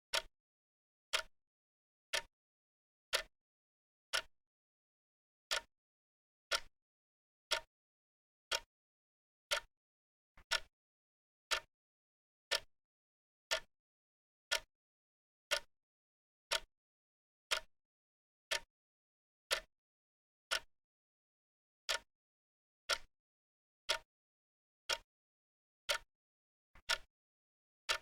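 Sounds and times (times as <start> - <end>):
clock ticking: 10.5 - 10.7, 26.8 - 27.1.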